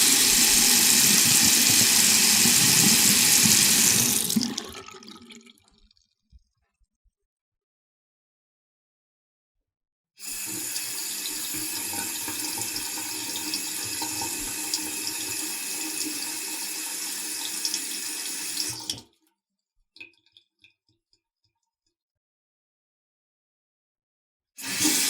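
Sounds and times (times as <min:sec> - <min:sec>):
faucet running into sink: 0:00.0 - 0:05.6, 0:10.2 - 0:19.1, 0:24.6 - 0:25.0.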